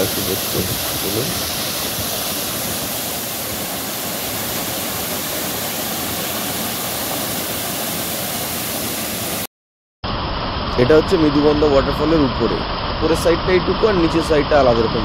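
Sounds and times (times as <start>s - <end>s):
waterfall rushing: 0.0s - 9.5s.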